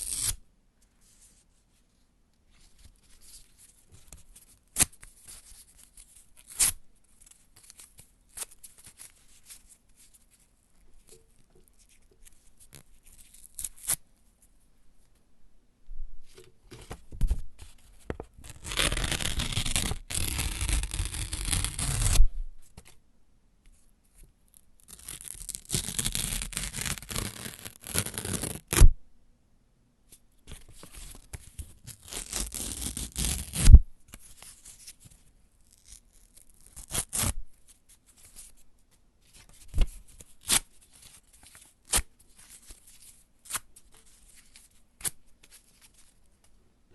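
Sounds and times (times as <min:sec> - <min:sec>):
paper tearing: 0:00.0 - 0:00.4, 0:18.4 - 0:22.2, 0:24.8 - 0:28.9, 0:31.9 - 0:33.8.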